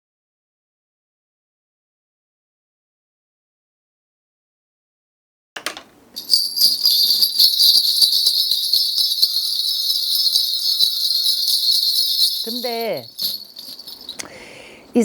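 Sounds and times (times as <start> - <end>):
small bells jingling: 6.2 - 14.8.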